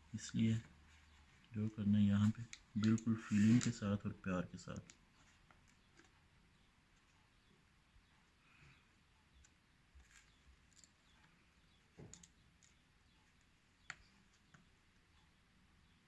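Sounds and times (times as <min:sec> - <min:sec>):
small clicks and taps: 0:09.3 - 0:14.8.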